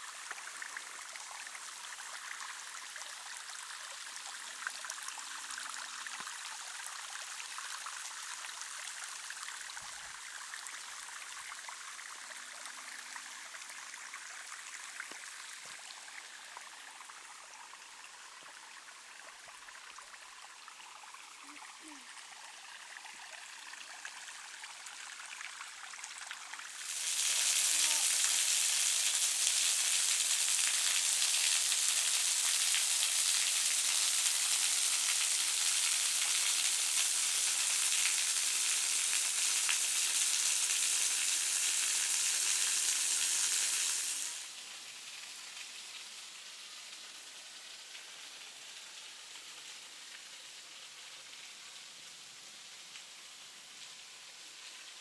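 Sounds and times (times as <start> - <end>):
rushing falling water: 26.7 - 45.9.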